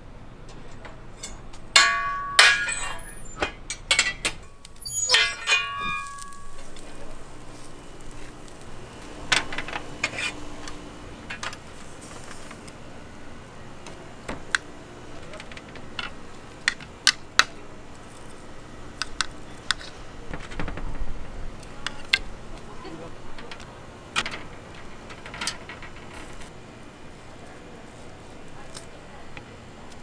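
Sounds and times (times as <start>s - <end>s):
steady background hum: 0.0s - 30.0s.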